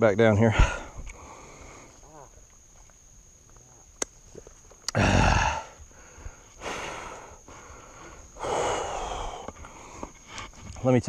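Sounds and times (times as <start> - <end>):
man breathing heavily: 0.5 - 2.1, 4.9 - 10.7.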